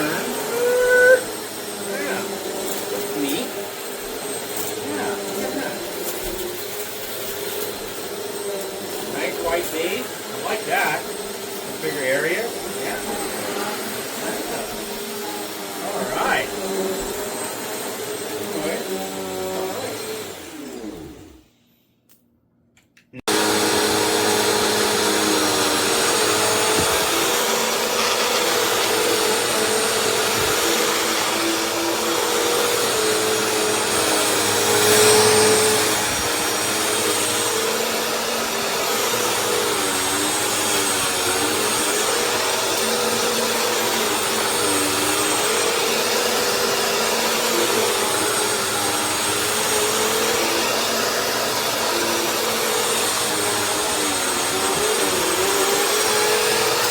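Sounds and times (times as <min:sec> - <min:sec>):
vacuum cleaner running: 0:00.0 - 0:21.6, 0:23.3 - 0:56.9.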